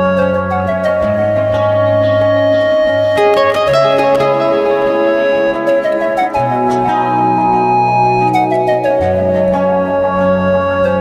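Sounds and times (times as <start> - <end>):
instrumental background music: 0.0 - 11.0.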